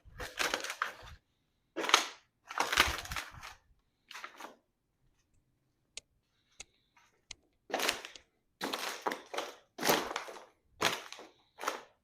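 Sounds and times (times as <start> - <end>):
packaging crackling and crunching: 0.0 - 1.2, 1.8 - 4.6, 7.7 - 12.0.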